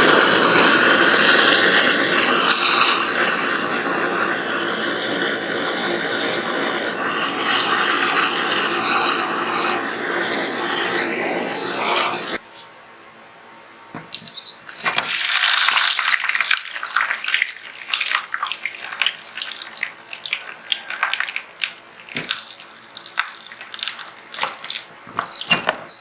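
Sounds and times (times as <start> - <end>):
water running from a tap: 14.9 - 25.6
water splashing: 15.0 - 25.6.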